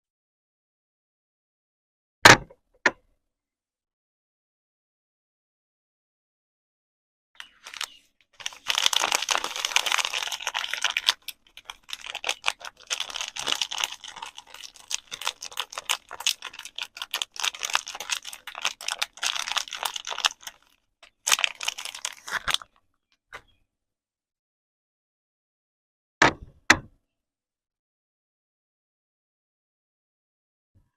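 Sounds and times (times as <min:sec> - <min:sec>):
packaging crinkling: 0:07.4 - 0:22.8.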